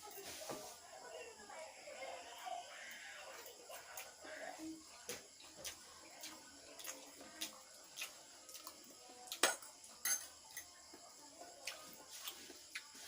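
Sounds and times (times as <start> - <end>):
cutlery clinking on a plate: 9.3 - 10.8.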